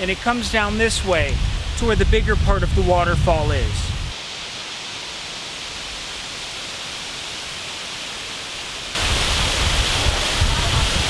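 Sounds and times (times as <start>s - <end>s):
waterfall rushing: 2.8s - 11.0s.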